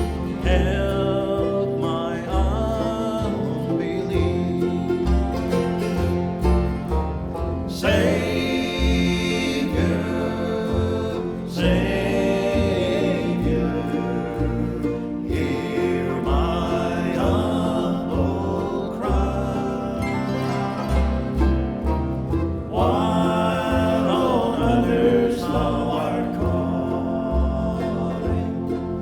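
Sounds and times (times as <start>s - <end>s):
bass notes: 0.0s - 29.0s
fiddle melody: 0.0s - 29.0s
plucked strings: 0.0s - 29.0s.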